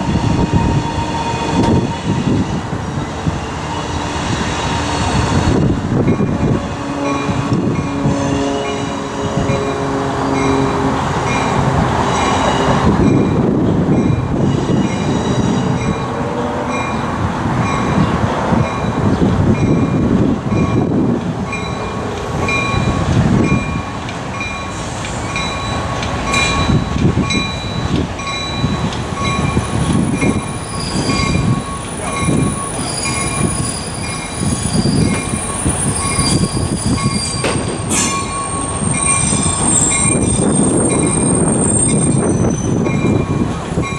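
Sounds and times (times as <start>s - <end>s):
train cars rumbling: 0.0s - 43.9s
train wheels squealing: 14.3s - 16.1s, 24.4s - 43.9s.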